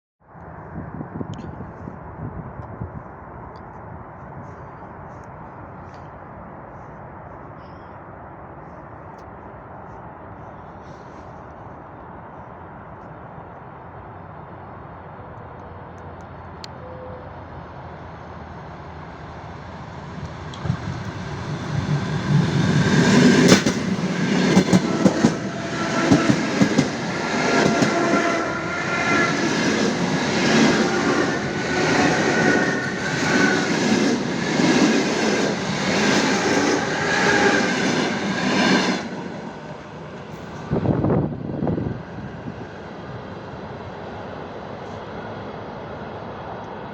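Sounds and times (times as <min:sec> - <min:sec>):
train wheels clickety-clack: 0:20.2 - 0:39.4.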